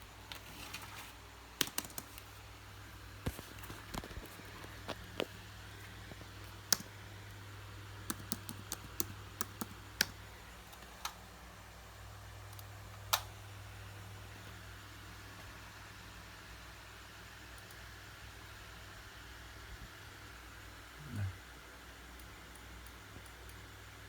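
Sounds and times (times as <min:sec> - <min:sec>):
low steady hum: 0:00.0 - 0:24.0
mouse and keyboard clicks: 0:01.6 - 0:02.3, 0:08.0 - 0:10.2.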